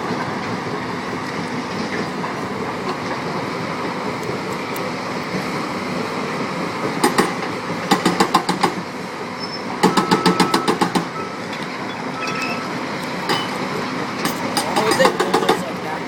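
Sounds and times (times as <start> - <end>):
excavator engine running: 0.0 - 16.0
hydraulic breaker hammering: 9.8 - 15.7.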